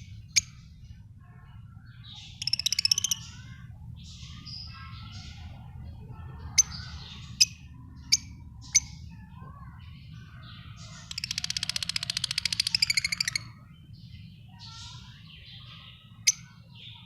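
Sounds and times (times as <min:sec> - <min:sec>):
soft bird twittering: 0:00.0 - 0:17.0
lovebirds chirping: 0:01.9 - 0:05.6, 0:06.4 - 0:17.0
fast rattling bird chatter: 0:02.1 - 0:13.6.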